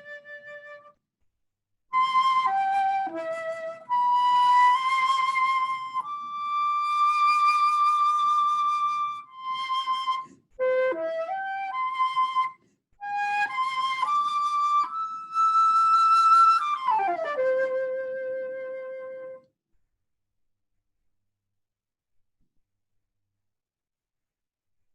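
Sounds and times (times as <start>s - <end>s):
solo flute melody: 0.0s - 1.0s, 1.9s - 19.5s.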